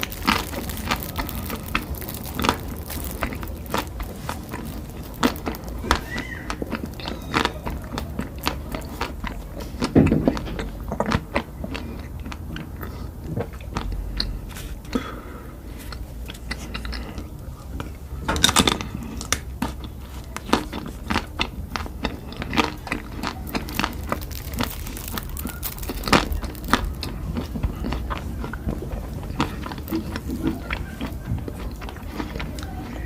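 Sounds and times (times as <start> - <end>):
person chewing food: 0.0 - 33.0.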